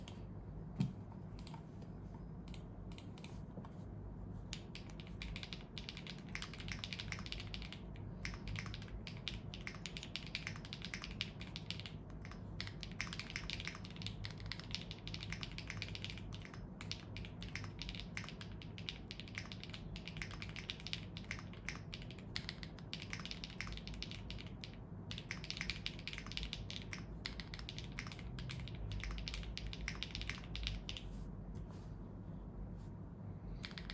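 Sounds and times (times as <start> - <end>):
mechanical keyboard typing: 4.5 - 31.1, 33.6 - 33.9.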